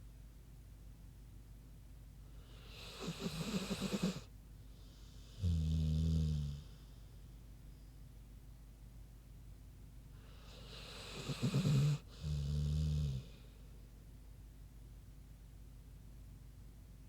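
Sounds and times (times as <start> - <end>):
dog snoring: 2.5 - 4.3, 5.1 - 6.8, 10.3 - 13.5.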